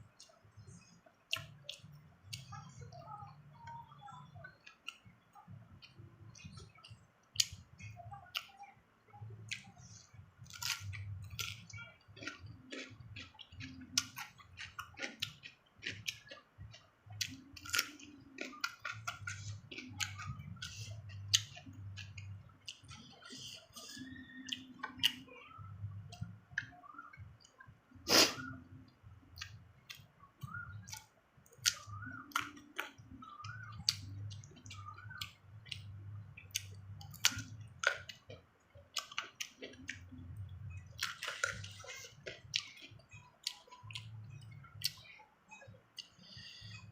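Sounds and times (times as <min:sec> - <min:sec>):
crunchy chewing: 0:09.5 - 0:28.7, 0:29.4 - 0:45.2
wet mouth clicks: 0:29.4 - 0:40.2.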